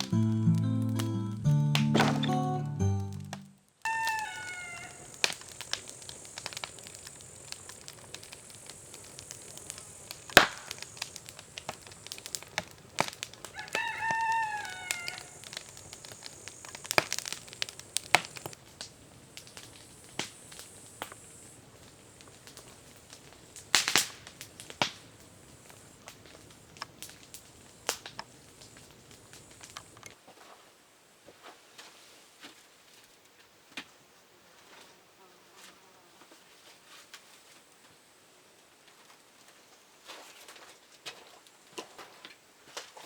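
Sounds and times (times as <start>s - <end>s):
steady high hiss: 0.0s - 30.1s
rooster crowing: 3.9s - 5.2s, 13.5s - 15.6s
sharp clicks and cracks: 4.7s - 13.8s, 14.7s - 21.2s, 22.2s - 30.2s.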